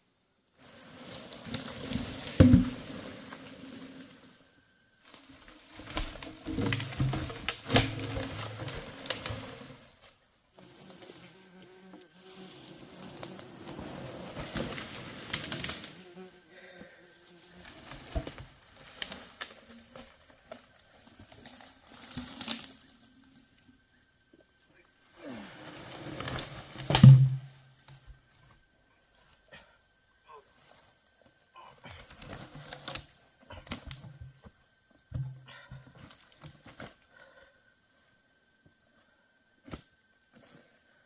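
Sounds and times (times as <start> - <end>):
thumps: 2.0 - 3.1, 5.8 - 9.5, 26.8 - 27.5.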